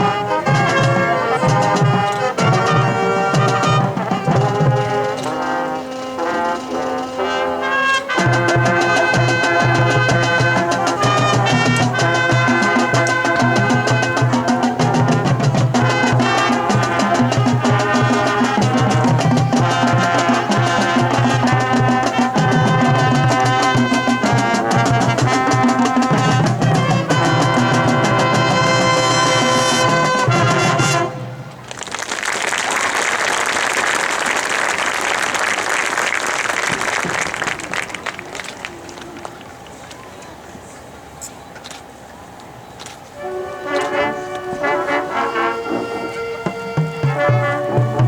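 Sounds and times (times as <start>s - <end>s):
marching band brass and drums: 0.0s - 39.6s, 42.8s - 48.0s
crowd applause: 31.6s - 40.2s.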